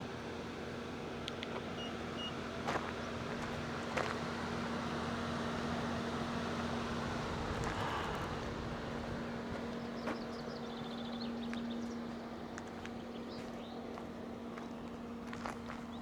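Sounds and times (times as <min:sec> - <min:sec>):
steady low hum: 0:00.0 - 0:16.0
birds chirping: 0:09.5 - 0:16.0.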